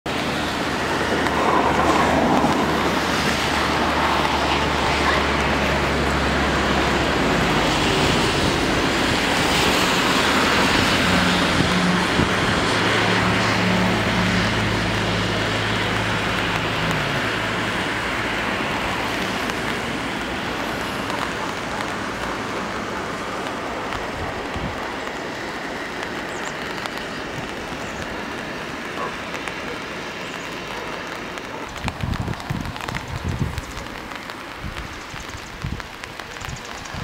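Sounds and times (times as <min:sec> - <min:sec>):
road traffic noise: 0:00.0 - 0:37.0
higher engine hum: 0:00.1 - 0:36.8
low engine drone: 0:00.1 - 0:36.9.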